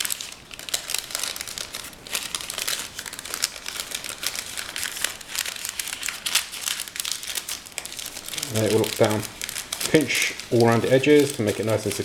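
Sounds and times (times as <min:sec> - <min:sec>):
parchment paper crinkling: 0:00.0 - 0:12.0.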